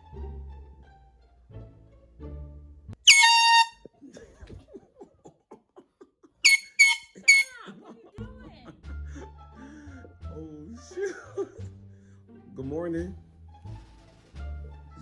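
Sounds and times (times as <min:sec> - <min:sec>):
quiet background music: 0:00.0 - 0:05.5, 0:07.0 - 0:15.0
canned air horn blasts: 0:03.1 - 0:03.8, 0:06.5 - 0:07.5.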